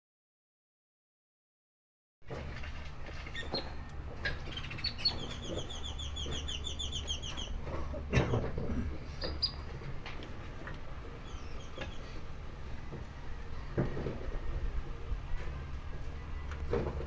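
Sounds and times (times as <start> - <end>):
steady low hum: 2.3 - 17.0
small bird chirping: 4.4 - 7.6, 9.2 - 9.7.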